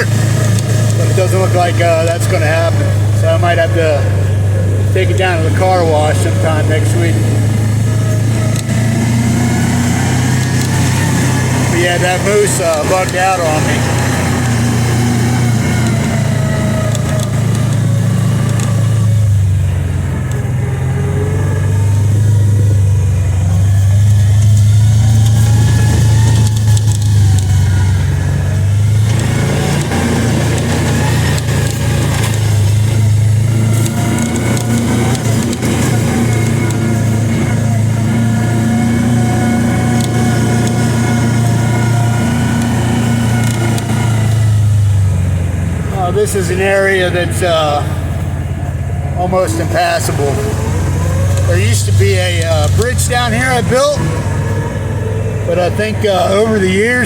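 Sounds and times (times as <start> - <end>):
side-by-side engine droning: 0.0 - 57.0.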